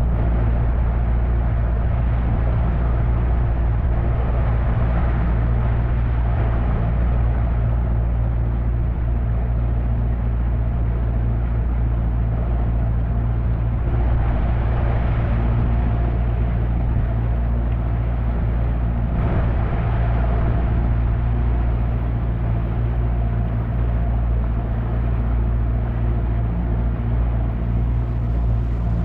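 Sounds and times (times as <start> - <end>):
outboard motor droning: 0.0 - 29.0
rushing noise: 13.6 - 24.2.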